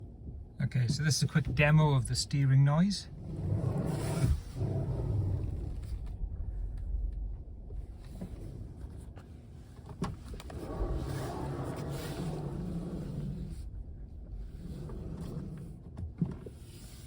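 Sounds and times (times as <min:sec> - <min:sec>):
power steering whirring: 0:08.0 - 0:17.0.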